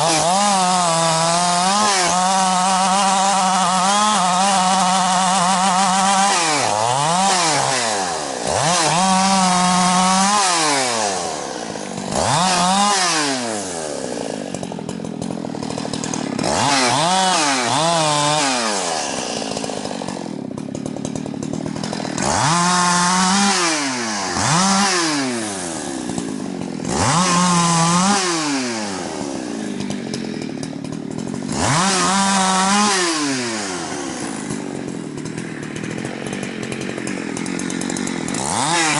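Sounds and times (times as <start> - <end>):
chainsaw revving and idling: 0.0 - 38.9.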